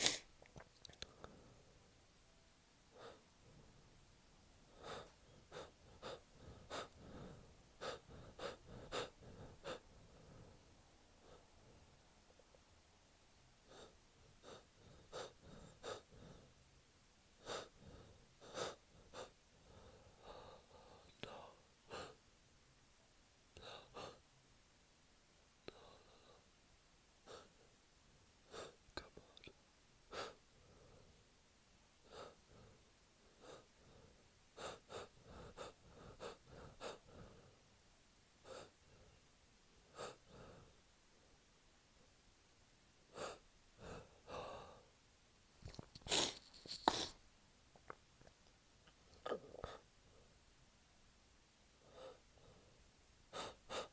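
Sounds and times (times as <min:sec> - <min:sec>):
man gasping breaths: 0:04.7 - 0:10.6.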